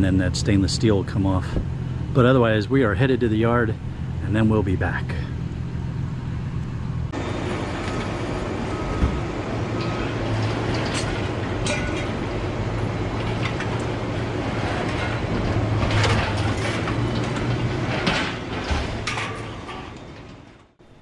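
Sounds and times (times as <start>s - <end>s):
truck engine: 0.0s - 20.9s
rattles and clicks: 9.8s - 20.7s.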